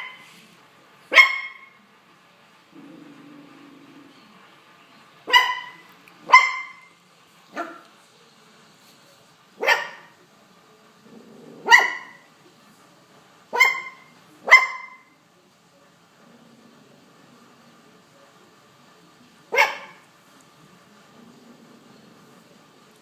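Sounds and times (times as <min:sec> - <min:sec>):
dog barking: 0:01.1 - 0:01.8, 0:05.3 - 0:06.9, 0:07.5 - 0:07.9, 0:09.6 - 0:10.2, 0:11.6 - 0:12.3, 0:13.6 - 0:15.1, 0:19.5 - 0:20.0.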